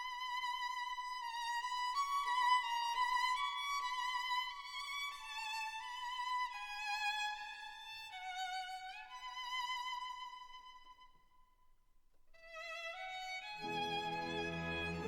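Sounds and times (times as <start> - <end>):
violin-like melody with vibrato: 12.8 - 15.0.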